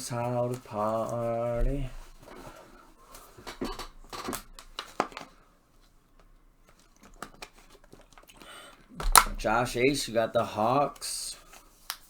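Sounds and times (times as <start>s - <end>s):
handling rustles and clicks: 0.5s - 10.0s.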